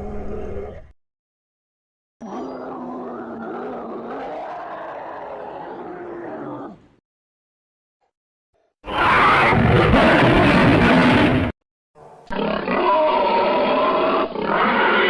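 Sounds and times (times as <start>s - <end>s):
monster roar: 8.9s - 11.5s, 12.3s - 15.0s.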